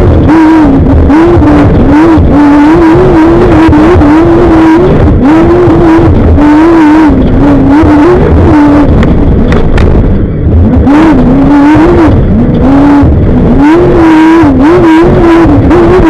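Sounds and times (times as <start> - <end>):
racing engine accelerating: 0.0 - 16.0.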